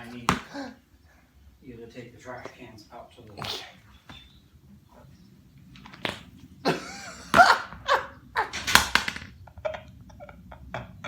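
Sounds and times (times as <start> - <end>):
skin squelching off rubber mat: 5.8 - 6.4.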